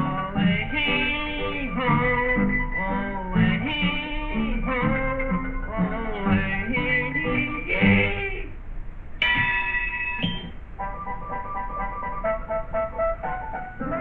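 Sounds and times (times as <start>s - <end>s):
cartoon music on plucked strings: 9.2s - 14.0s.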